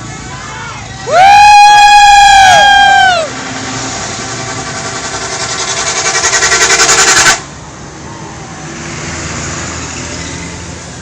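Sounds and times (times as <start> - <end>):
bus engine rhythmic pulsing: 0.0 - 1.4, 2.5 - 11.0.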